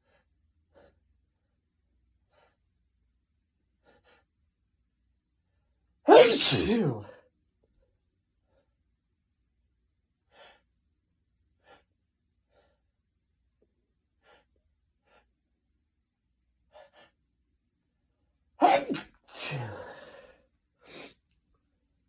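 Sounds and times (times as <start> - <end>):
man sniffing and breathing: 18.6 - 21.2.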